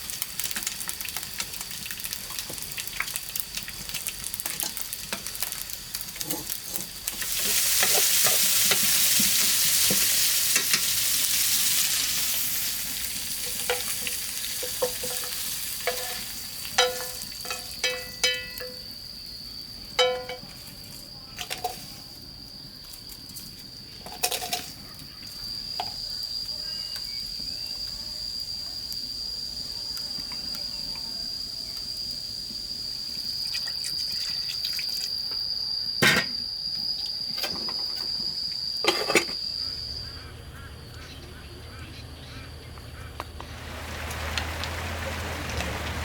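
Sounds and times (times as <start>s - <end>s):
high insect trill: 0.0s - 46.0s
hard objects clinking: 13.4s - 18.9s, 20.0s - 20.5s.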